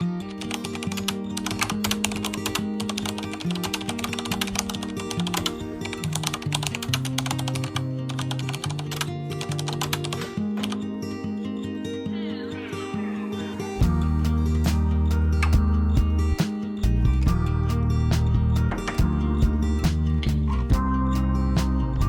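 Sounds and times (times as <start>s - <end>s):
rapid irregular clicks: 0.3s - 10.8s
background music with low notes: 13.0s - 22.0s.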